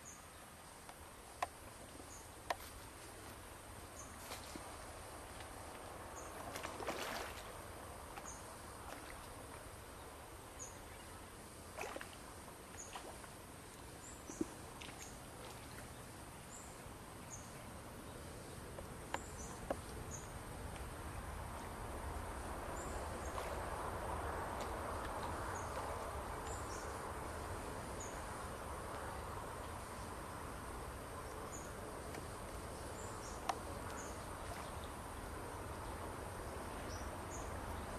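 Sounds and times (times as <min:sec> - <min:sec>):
steady hiss: 0:16.0 - 0:37.9
high insect or bird chirps: 0:24.9 - 0:30.1, 0:31.2 - 0:35.3.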